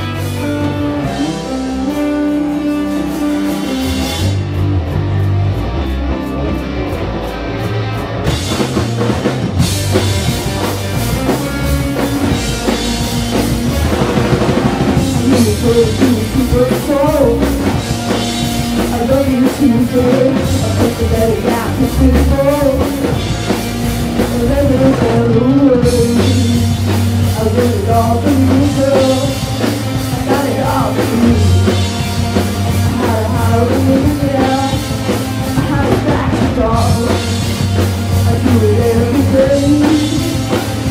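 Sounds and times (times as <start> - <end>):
drums: 0.0 - 40.9
rock guitar: 0.0 - 40.9
person singing: 14.9 - 17.8, 18.8 - 23.3, 24.2 - 31.9, 32.8 - 40.9.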